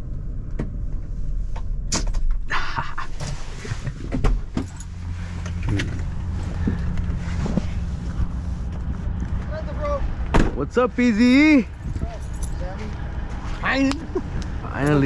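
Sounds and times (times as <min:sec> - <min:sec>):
vehicle engine running: 0:03.0 - 0:15.0.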